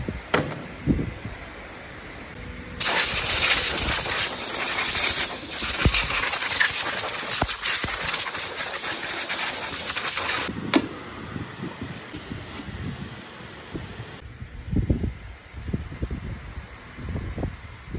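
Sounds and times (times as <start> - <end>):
loud steady hiss: 1.5 - 10.6.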